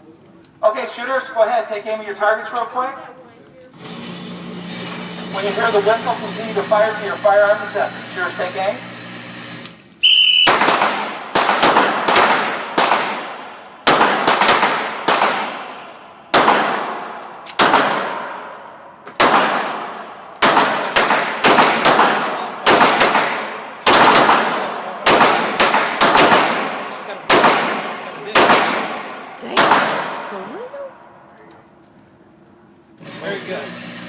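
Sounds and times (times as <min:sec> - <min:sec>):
whistle blast: 0:10.0 - 0:10.6
handgun shots echoing: 0:10.2 - 0:30.3.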